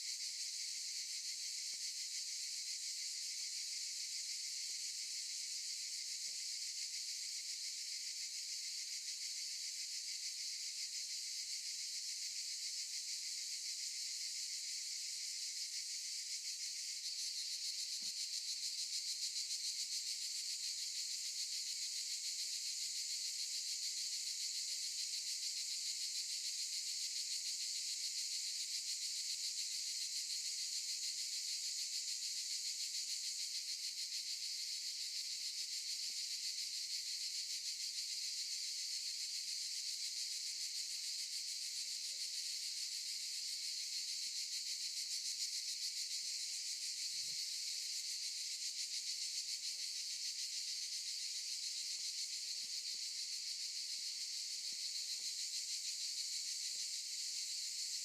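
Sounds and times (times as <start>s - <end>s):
cicadas buzzing: 16.4s - 22.2s, 39.0s - 40.2s, 44.5s - 58.0s.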